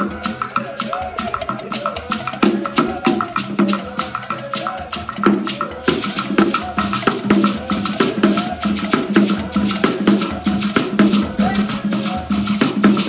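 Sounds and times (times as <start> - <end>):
low drum beat: 4.9 - 13.0.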